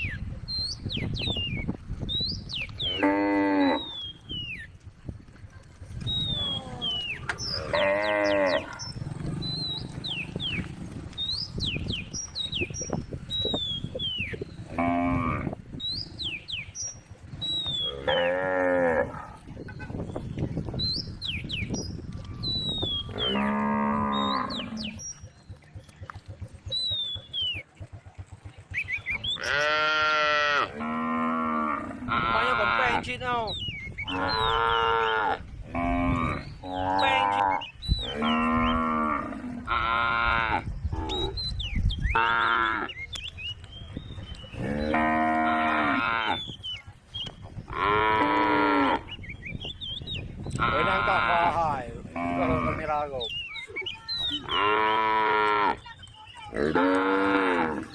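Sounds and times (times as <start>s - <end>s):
cows mooing: 2.8s - 4.1s, 6.3s - 11.2s, 14.3s - 16.4s, 17.6s - 19.6s, 23.0s - 25.2s, 29.3s - 33.1s, 34.0s - 41.4s, 42.1s - 43.0s, 44.5s - 46.5s, 47.7s - 49.1s, 50.6s - 53.1s, 54.3s - 57.9s.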